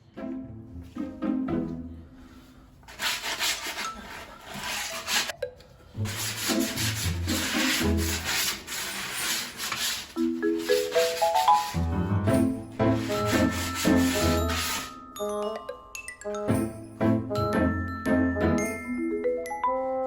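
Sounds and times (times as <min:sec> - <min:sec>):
light background music: 0:00.0 - 0:02.7, 0:05.2 - 0:09.4, 0:10.2 - 0:20.0
wood being sanded: 0:02.9 - 0:05.3, 0:06.0 - 0:11.9, 0:12.8 - 0:15.0.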